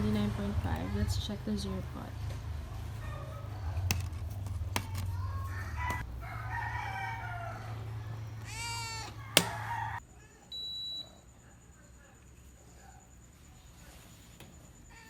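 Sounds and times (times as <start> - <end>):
rooster crowing: 5.1 - 10.0.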